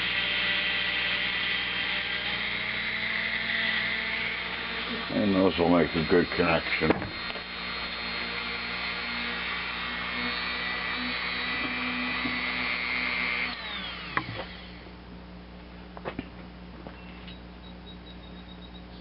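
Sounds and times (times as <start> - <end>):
rotary tool wire brush whining: 0.0 - 14.9.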